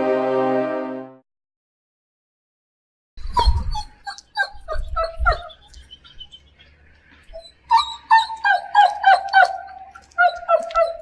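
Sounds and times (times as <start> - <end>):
dog whimpering: 3.3 - 5.8, 7.2 - 11.0.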